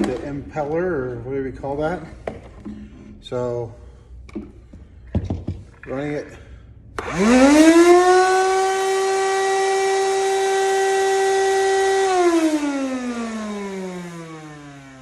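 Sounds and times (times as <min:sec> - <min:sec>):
cordless vacuum motor whine: 0:07.0 - 0:15.0.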